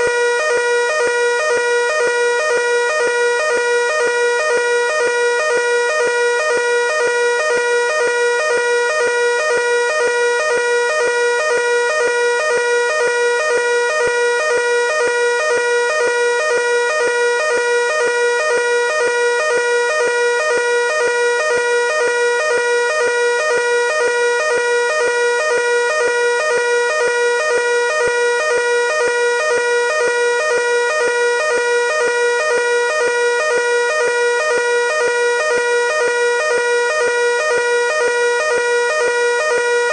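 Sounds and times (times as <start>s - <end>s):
fire alarm tone pulsing: 0.0s - 39.9s.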